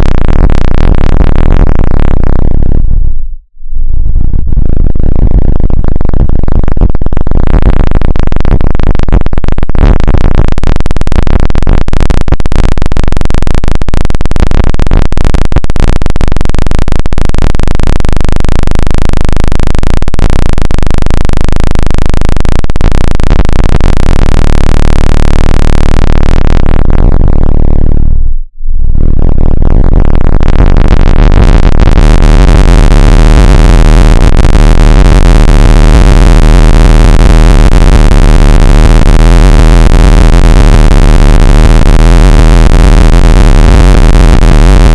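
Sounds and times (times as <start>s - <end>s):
harsh synthesized electronic sound: 22.8s - 44.9s.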